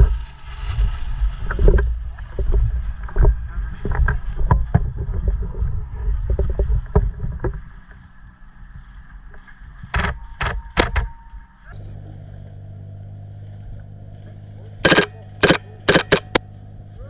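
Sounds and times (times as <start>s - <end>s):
wind rumble on microphone: 0.0s - 12.7s
sharp clicks and snaps: 14.9s - 16.4s.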